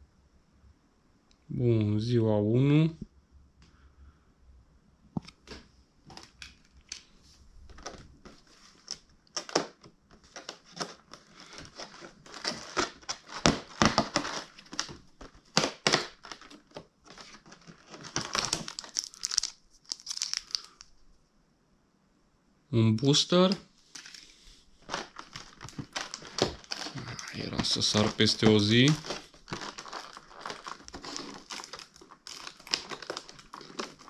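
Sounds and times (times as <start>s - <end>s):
packaging crinkling: 7.7s - 21.0s, 23.5s - 34.0s
cardboard tearing: 10.4s - 20.7s, 24.8s - 34.0s.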